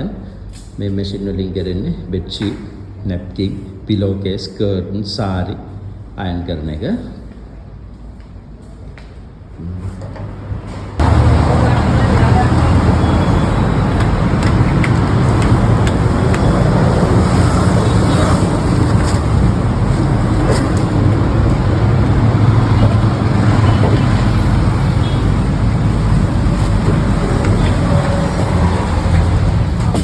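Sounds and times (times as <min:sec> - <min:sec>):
laundry machinery rumbling and humming: 0:10.2 - 0:30.0.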